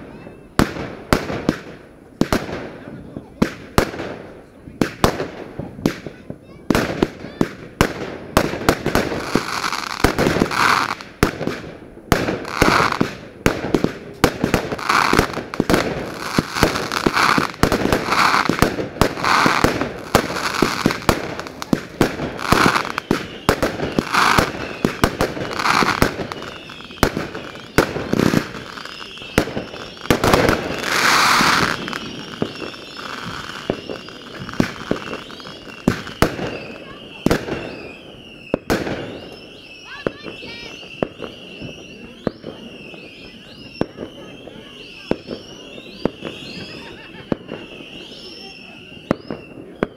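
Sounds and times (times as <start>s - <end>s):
fireworks bangs and crackles: 0.0s - 49.9s
fireworks hissing bursts: 0.0s - 49.9s
wavering high whistle: 22.5s - 30.1s, 30.7s - 49.9s.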